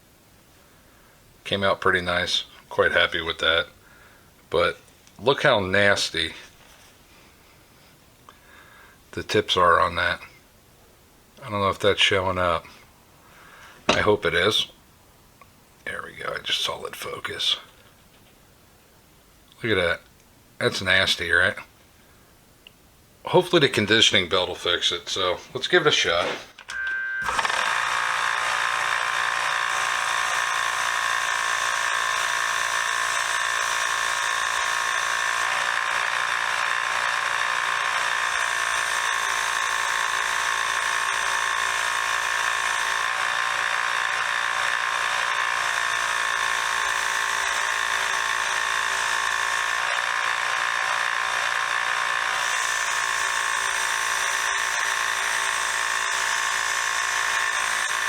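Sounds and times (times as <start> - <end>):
belt sander running: 24.4 - 58.0
screwdriver tip grinding on belt: 25.8 - 58.0.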